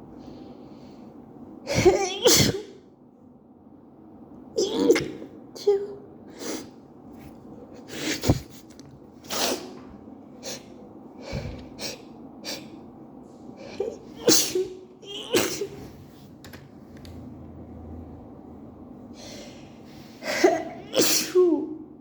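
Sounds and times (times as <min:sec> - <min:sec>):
woman sneezing: 0:01.7 - 0:02.8, 0:04.6 - 0:05.3, 0:13.8 - 0:16.0, 0:20.2 - 0:21.8
sniffs and sharp breaths: 0:06.3 - 0:09.8.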